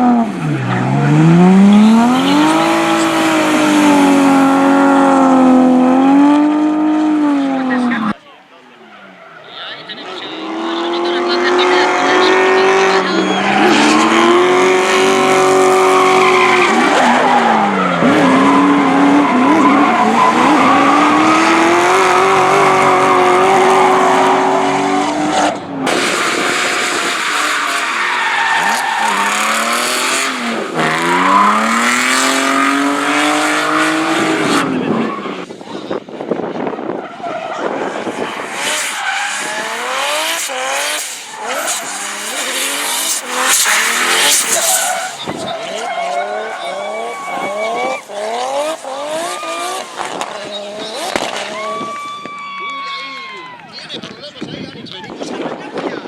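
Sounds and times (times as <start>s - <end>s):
car engines revving high: 0.0s - 52.6s
tyres screeching: 8.8s - 25.2s, 26.8s - 35.5s, 36.9s - 53.0s.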